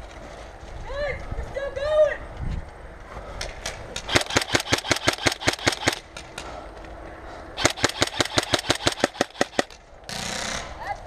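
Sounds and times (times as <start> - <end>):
airsoft gun rapid shots: 4.1 - 6.1, 7.6 - 9.8.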